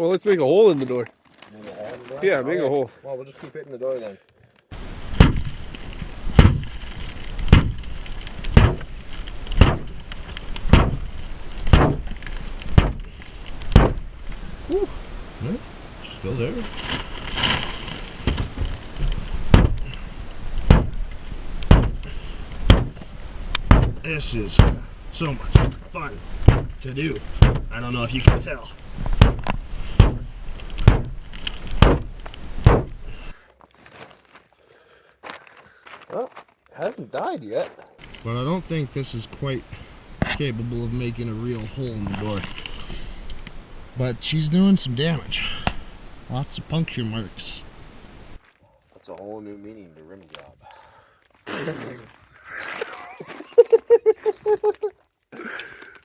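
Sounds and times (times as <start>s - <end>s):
pen tip striking car door: 8.6s - 9.0s, 9.6s - 10.0s, 10.7s - 14.4s, 19.6s - 20.0s, 20.7s - 28.6s, 29.2s - 33.2s.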